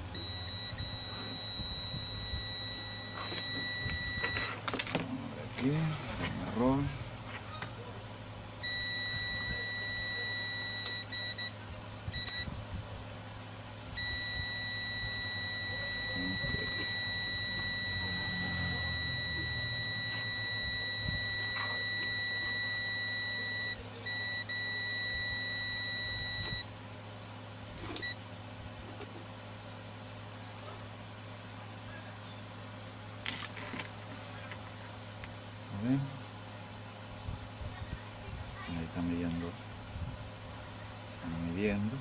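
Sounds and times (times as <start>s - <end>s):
multimeter continuity beep: 0.0s - 4.6s, 8.6s - 12.5s, 14.0s - 26.7s, 28.0s - 28.2s
faint low hum: 0.0s - 12.9s, 13.8s - 26.8s.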